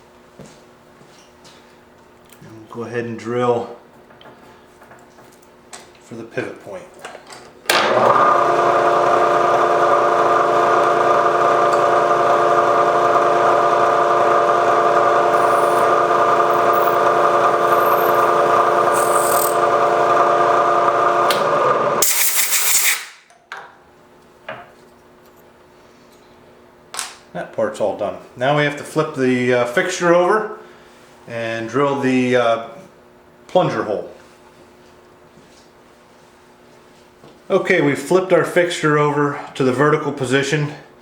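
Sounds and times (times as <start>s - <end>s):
milling machine spindle whine: 7.8s - 22.0s.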